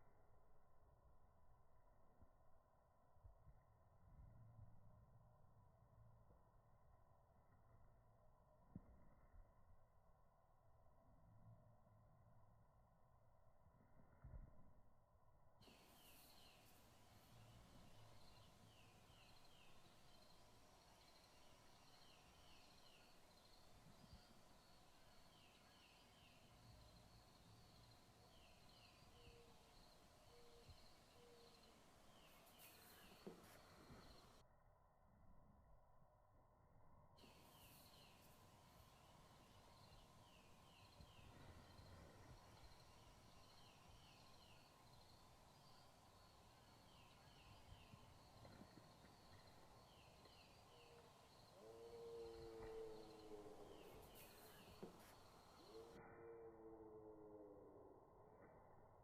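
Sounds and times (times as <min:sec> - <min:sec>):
bird chirping: 0:15.6 - 0:34.4, 0:37.2 - 0:56.3
low hoot-like call: 0:50.7 - 0:57.8.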